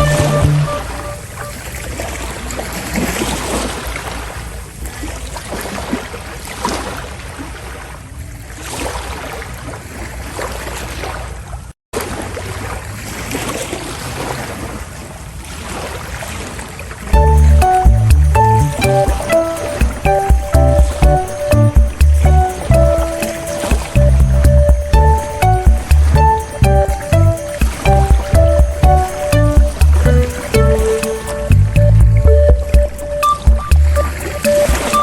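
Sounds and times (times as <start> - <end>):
ship low drone: 0.0 - 1.8, 17.2 - 35.0
sea water splashing past hull: 0.0 - 35.0.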